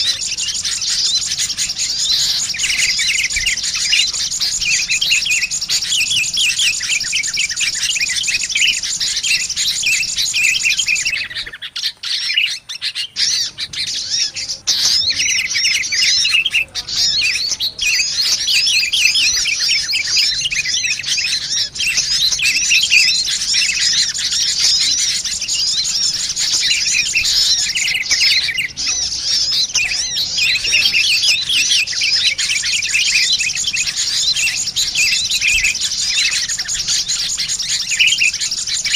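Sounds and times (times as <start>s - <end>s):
birds chirping and twittering: 0.0s - 38.9s.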